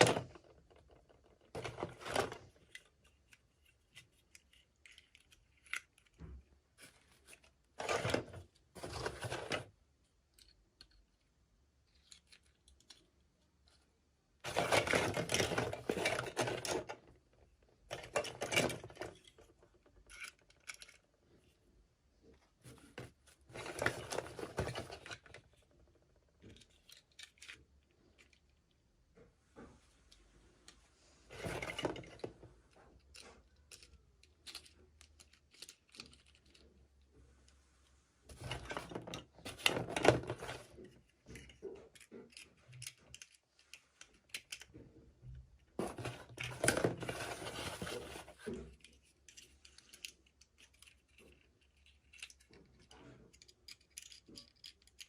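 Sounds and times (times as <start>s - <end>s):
packaging rustling and crinkling: 14.5s - 16.9s, 45.8s - 48.6s
plastic pieces clicking and tapping: 33.0s - 36.8s, 41.1s - 45.4s, 48.7s - 55.0s.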